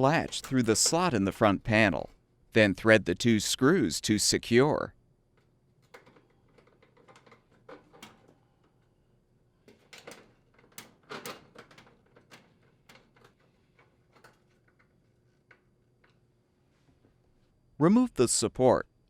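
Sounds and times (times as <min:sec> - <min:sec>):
faint clicks and metal knocks: 0:05.3 - 0:09.0, 0:09.6 - 0:17.5.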